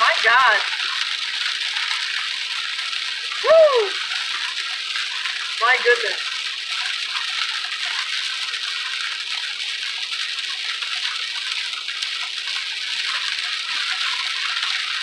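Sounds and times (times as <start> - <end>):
heavy rain on a car: 0.0 - 15.0.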